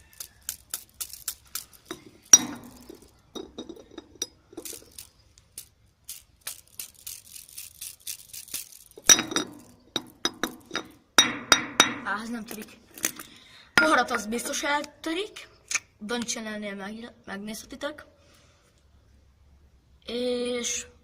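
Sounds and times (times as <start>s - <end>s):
fidget spinner clinking on glass: 0.0s - 13.2s, 13.8s - 14.6s
glass ringing hits: 2.0s - 4.4s, 9.0s - 12.1s, 13.8s - 14.4s.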